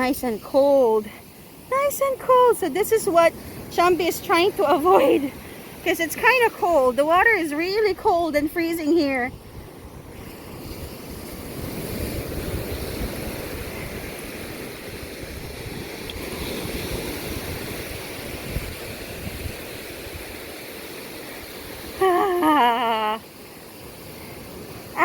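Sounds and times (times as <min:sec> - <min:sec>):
person's voice: 0:00.0 - 0:09.3, 0:22.0 - 0:23.2
ocean surf washing up beach: 0:00.0 - 0:25.0.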